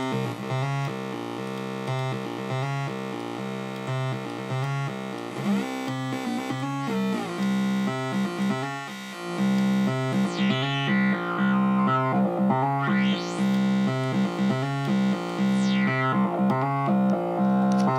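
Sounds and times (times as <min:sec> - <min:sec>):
synthesizer chords over bass: 0:00.0 - 0:17.9.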